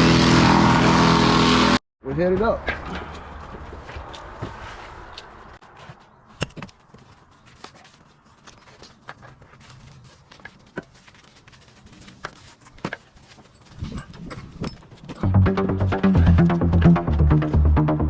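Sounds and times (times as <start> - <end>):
climbing gear clicks and knocks: 6.4 - 15.2.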